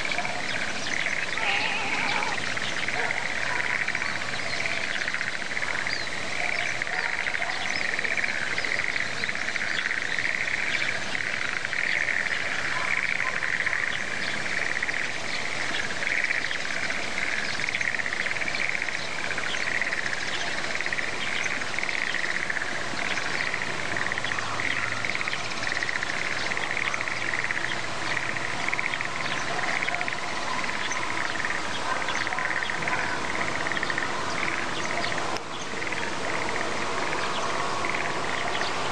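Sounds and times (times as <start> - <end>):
frogs chorus: 0.0 - 38.9.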